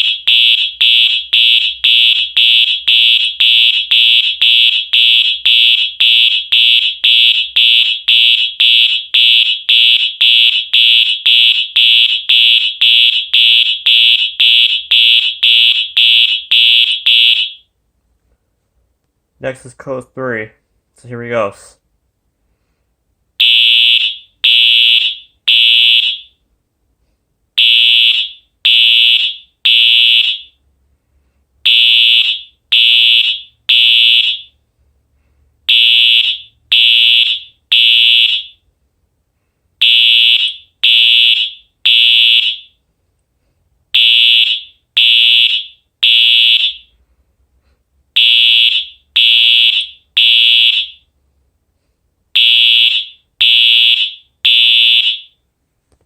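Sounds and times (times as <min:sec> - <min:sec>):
fire alarm horn blasts: 0:00.0 - 0:17.7, 0:23.4 - 0:26.4, 0:27.6 - 0:30.6, 0:31.6 - 0:34.5, 0:35.7 - 0:38.6, 0:39.8 - 0:42.8, 0:44.0 - 0:46.9, 0:48.2 - 0:51.1, 0:52.4 - 0:55.4.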